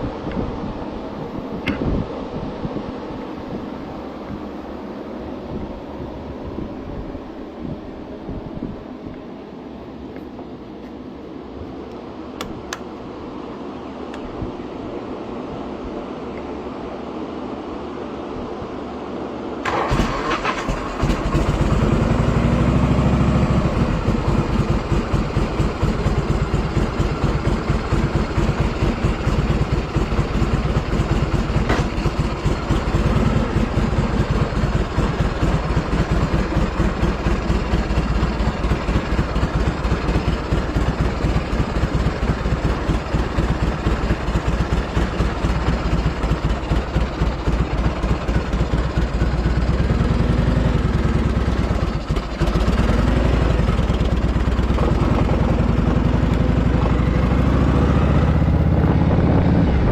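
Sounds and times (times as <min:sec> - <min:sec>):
motorcycle engine starting and idling: 0:19.6 - 0:59.9.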